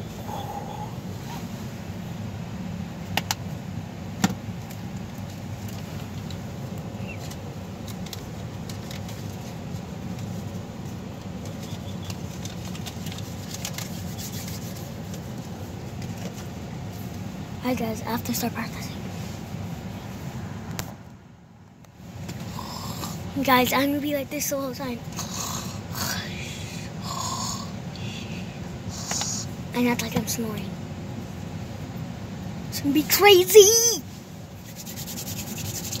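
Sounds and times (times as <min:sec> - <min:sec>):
handling noise ticks and rubbing: 0:04.6 - 0:17.3, 0:28.9 - 0:29.4, 0:34.6 - 0:36.0.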